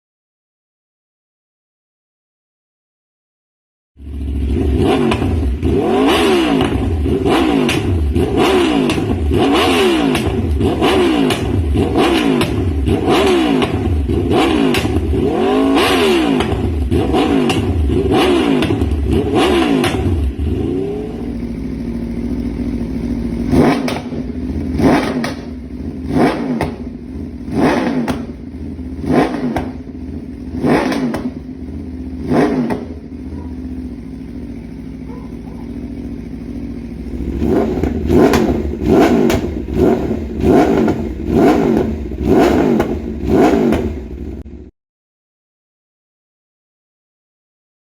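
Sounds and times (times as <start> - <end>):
motorcycle engine idling: 4.0 - 44.7
motorcycle engine revving: 4.0 - 44.7.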